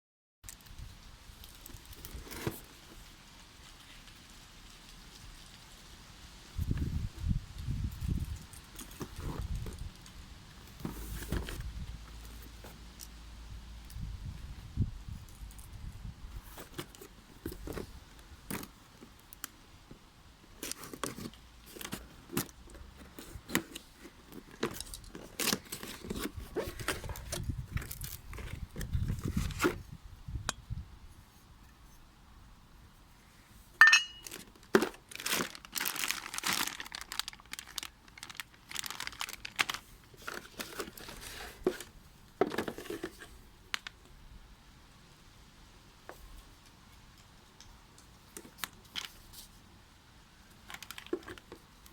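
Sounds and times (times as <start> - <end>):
cardboard rustling: 1.6 - 4.1, 8.4 - 10.0, 10.6 - 13.0, 16.3 - 19.2, 20.5 - 30.0, 33.5 - 43.4
plastic wrap crinkling and tearing: 20.6 - 29.7, 34.2 - 41.8, 50.6 - 51.6.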